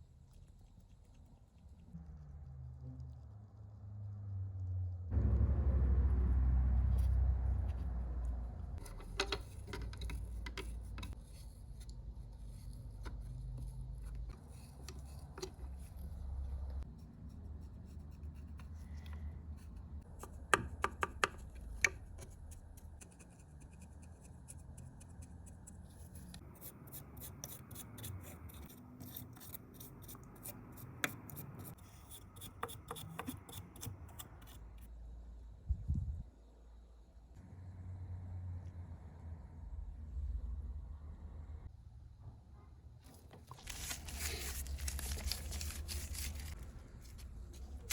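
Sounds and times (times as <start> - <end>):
low rumble: 1.7 - 9.2, 35.0 - 36.5, 37.1 - 42.7.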